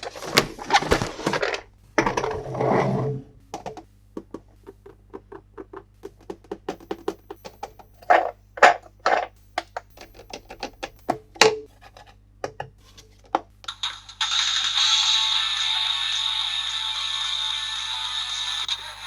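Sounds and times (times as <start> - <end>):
packaging scraping rustles: 0.0 - 1.7.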